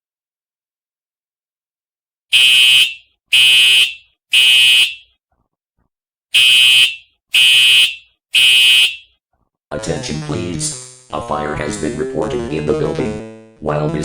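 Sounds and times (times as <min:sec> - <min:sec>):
fire alarm horn blasts: 0:02.3 - 0:05.1, 0:06.3 - 0:09.1.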